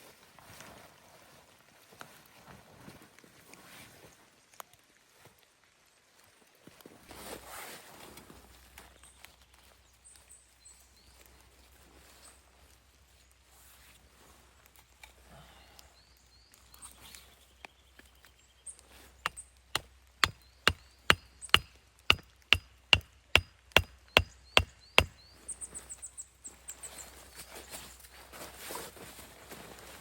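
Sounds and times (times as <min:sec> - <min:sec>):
wood being chopped: 0:19.3 - 0:25.2.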